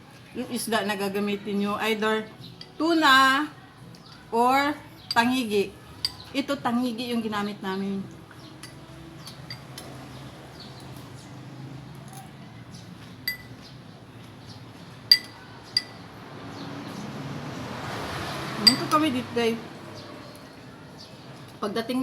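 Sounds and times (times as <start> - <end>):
cutlery clinking against dishes: 6.0 - 6.3, 8.5 - 10.2, 13.0 - 14.4, 15.0 - 16.1, 18.6 - 19.0.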